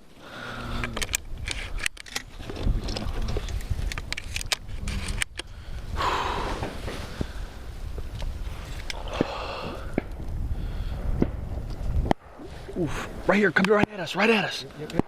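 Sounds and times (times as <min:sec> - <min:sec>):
wind buffeting microphone: 0:00.4 - 0:15.0
gear clicks and rustles: 0:00.5 - 0:10.4.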